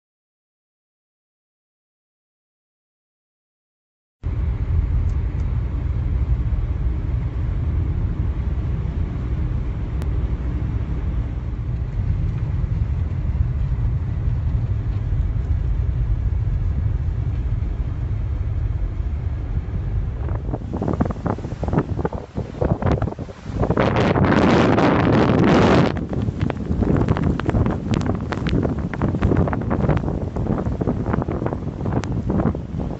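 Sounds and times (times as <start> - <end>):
wind buffeting microphone: 4.3 - 32.9.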